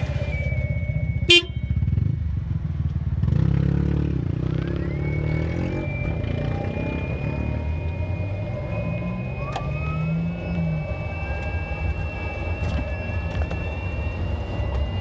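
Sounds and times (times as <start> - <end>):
low road rumble: 0.0 - 15.0
high electric motor whine: 4.0 - 15.0.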